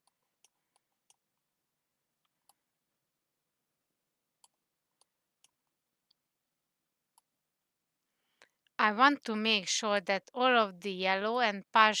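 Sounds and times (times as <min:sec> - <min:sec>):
computer mouse clicks: 0:00.0 - 0:01.5, 0:04.4 - 0:06.2.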